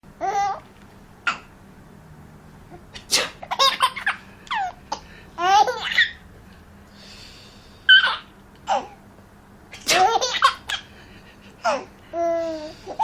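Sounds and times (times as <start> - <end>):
woman mock sneezing: 3.0 - 3.5, 9.8 - 10.2
baby laughing and squealing: 5.4 - 6.2.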